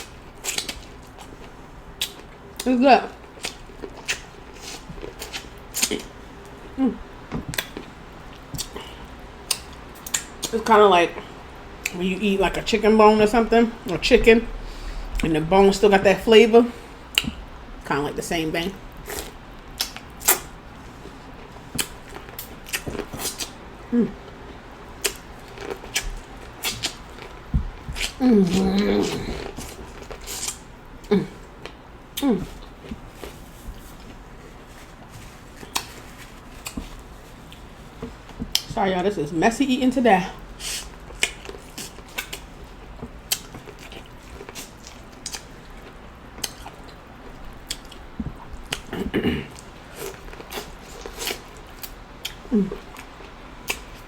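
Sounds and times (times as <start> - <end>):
wet chewing and smacking: 0.0 - 6.6, 7.2 - 10.6, 18.9 - 38.8, 40.4 - 54.0
person humming: 28.2 - 29.6.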